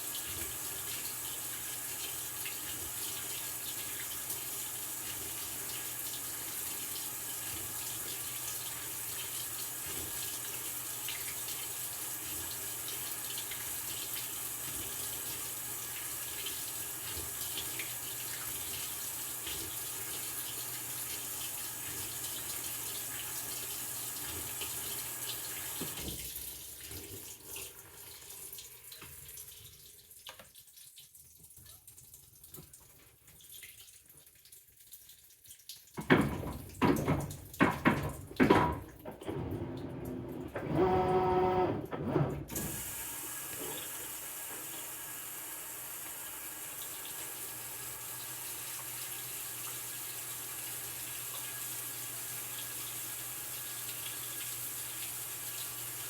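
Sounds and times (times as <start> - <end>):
water rushing into washing machine: 0.0 - 34.8, 35.4 - 56.0
faint water trickling: 0.0 - 39.4.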